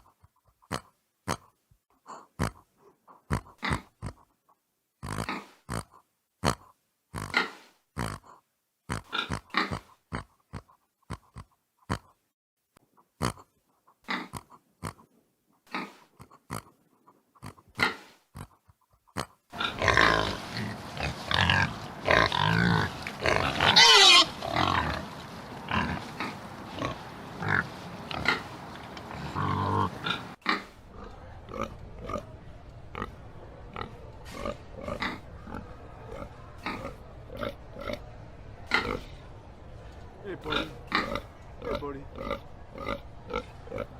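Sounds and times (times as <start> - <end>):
pigs grunting: 2.1 - 4.3, 5.0 - 12.2, 13.2 - 15.1, 15.7 - 16.8, 17.4 - 39.5, 40.1 - 43.9
background hum: 19.6 - 43.9.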